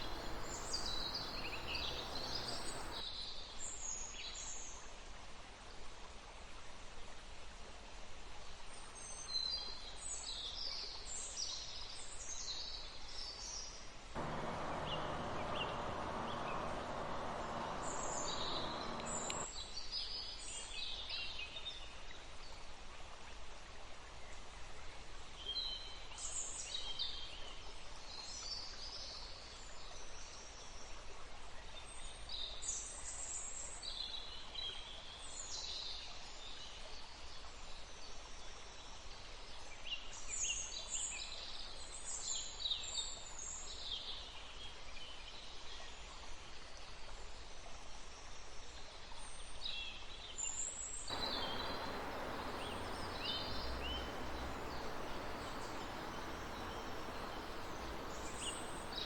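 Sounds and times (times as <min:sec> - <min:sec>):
birds chirping: 0:00.0 - 0:03.0, 0:14.2 - 0:19.4, 0:51.1 - 0:59.0
river running: 0:00.0 - 0:03.0, 0:14.2 - 0:19.5, 0:51.1 - 0:59.0.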